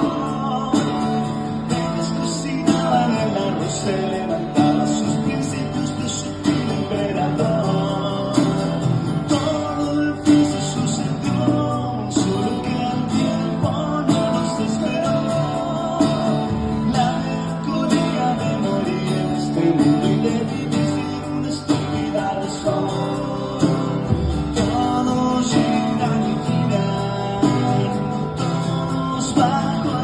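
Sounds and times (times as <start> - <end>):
electric guitars: 0.0 - 30.0
person singing: 0.0 - 30.0
steady drum beat: 21.8 - 28.1.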